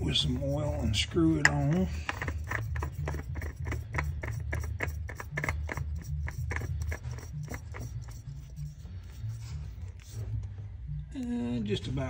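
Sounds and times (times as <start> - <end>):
oil filter clicking and scraping: 0.1 - 8.7.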